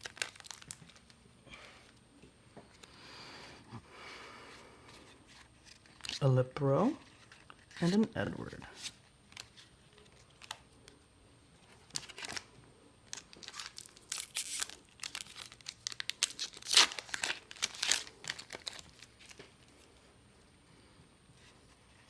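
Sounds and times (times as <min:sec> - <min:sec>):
foil wrapper tearing and crinkling: 0:00.0 - 0:01.2, 0:09.3 - 0:10.6, 0:11.8 - 0:12.5, 0:13.1 - 0:19.4.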